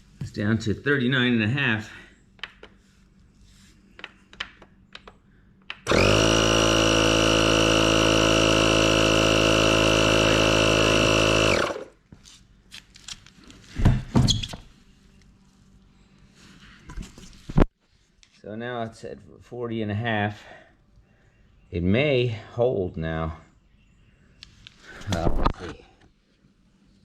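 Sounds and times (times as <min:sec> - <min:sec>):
electric air compressor running: 0:05.8 - 0:12.0.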